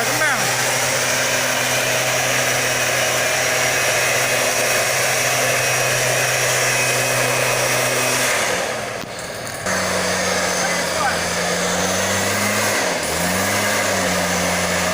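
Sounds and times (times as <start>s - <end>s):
mist blower engine and fan: 0.0s - 14.9s.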